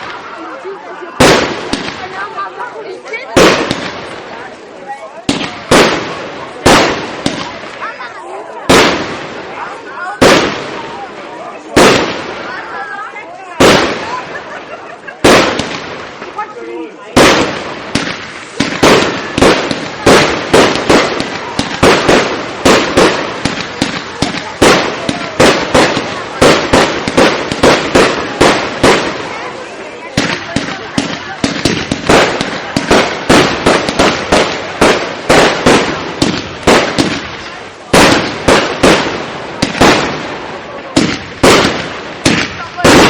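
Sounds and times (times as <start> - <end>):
firework shells bursting: 15.2 - 16.4, 17.2 - 29.4, 30.1 - 43.0.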